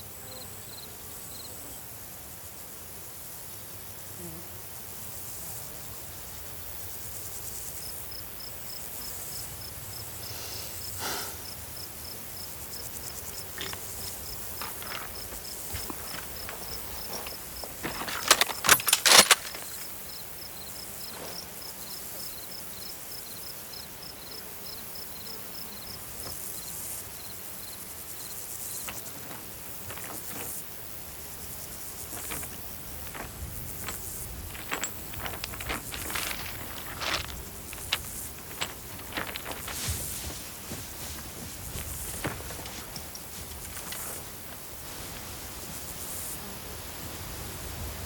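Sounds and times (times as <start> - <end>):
insects chirping: 4.7 - 48.0
lower insect chirping: 5.1 - 46.8
soft rustles: 13.5 - 20.0, 31.9 - 46.4.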